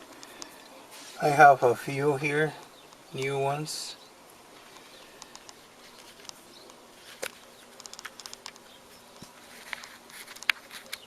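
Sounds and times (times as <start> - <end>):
small clicks and rustles: 0.0 - 1.2, 4.6 - 11.0
faint steady hum: 0.0 - 11.0.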